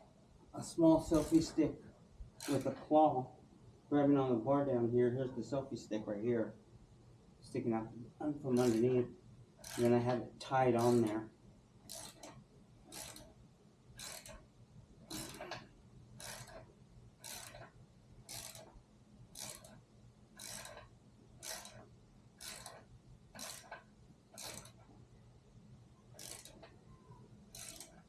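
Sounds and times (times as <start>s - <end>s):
ratchet wrench clicking: 1.0s - 1.6s, 2.4s - 2.8s, 8.5s - 8.9s, 9.6s - 10.1s, 10.8s - 11.2s, 11.8s - 13.4s, 14.0s - 14.5s, 15.1s - 19.8s, 20.4s - 24.8s, 26.1s - 26.8s, 27.5s - 28.0s.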